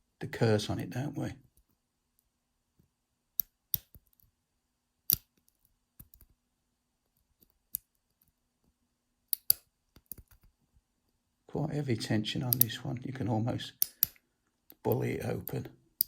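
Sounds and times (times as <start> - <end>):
lock pick metal clicks: 3.4 - 4.2, 5.1 - 6.3, 9.3 - 10.5, 13.8 - 15.6.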